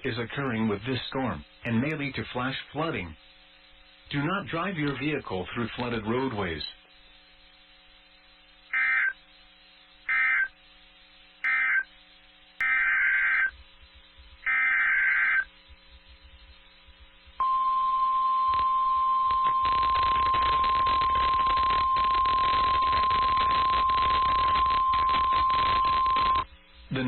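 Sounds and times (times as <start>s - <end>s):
buzzy data bursts: 0.0s - 27.0s
steady warning alarm tone: 8.7s - 9.3s, 10.0s - 10.6s, 11.4s - 12.0s, 12.6s - 13.6s, 14.3s - 16.6s, 17.3s - 27.0s.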